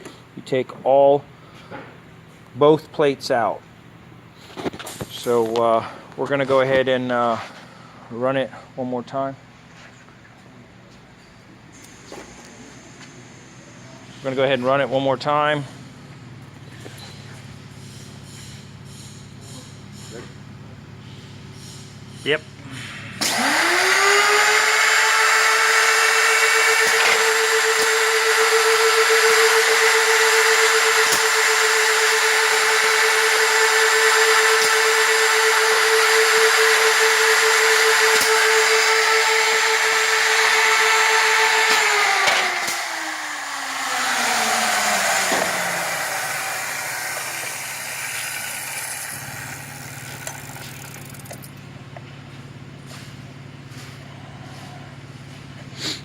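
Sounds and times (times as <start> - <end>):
router machine whining: 23.2 - 51.3.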